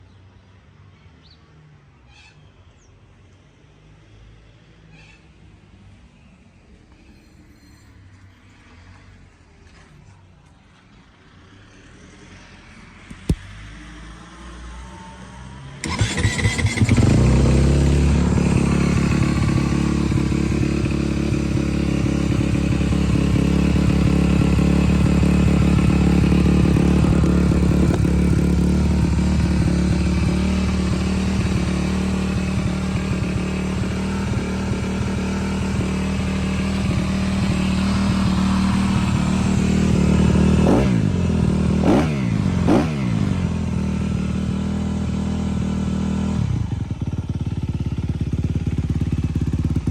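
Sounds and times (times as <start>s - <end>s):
motocross engine idling and revving: 15.8s - 49.9s.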